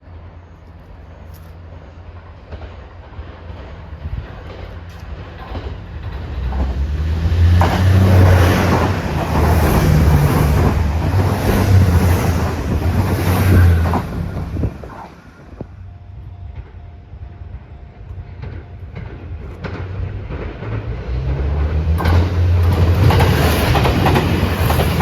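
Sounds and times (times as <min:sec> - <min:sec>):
train engine drone: 0:00.0 - 0:25.0
rushing wheel and wind noise: 0:01.6 - 0:15.9, 0:18.4 - 0:25.0
wheels clicking over rail joints: 0:02.4 - 0:15.2, 0:18.4 - 0:25.0.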